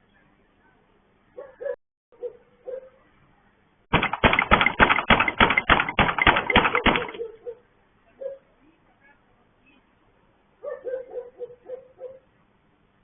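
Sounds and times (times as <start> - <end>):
rapid banging on a gate: 3.9 - 7.3.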